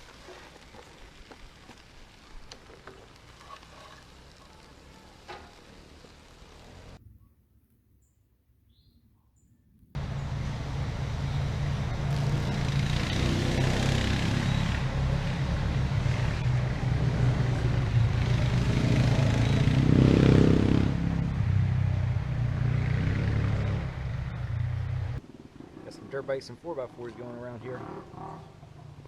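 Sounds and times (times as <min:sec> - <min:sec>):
off-road vehicle engine running: 0:10.0 - 0:25.2.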